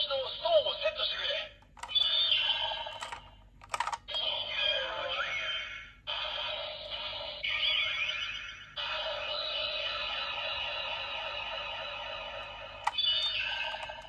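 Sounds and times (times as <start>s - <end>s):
plastic clicks: 1.6s - 2.0s, 2.9s - 4.1s
toy electronic sound effects: 1.8s - 14.0s.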